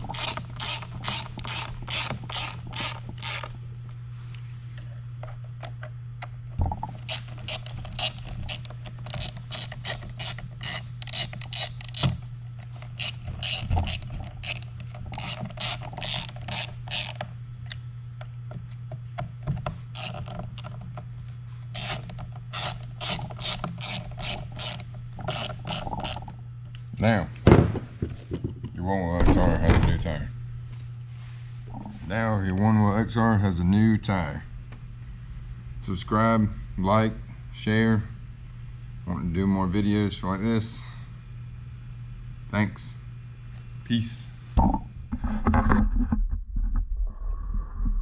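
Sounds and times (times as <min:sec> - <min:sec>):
ratchet wrench clicking: 0:00.0 - 0:03.5, 0:07.0 - 0:12.2, 0:13.0 - 0:17.3, 0:21.8 - 0:26.3
steady low hum: 0:00.0 - 0:48.0.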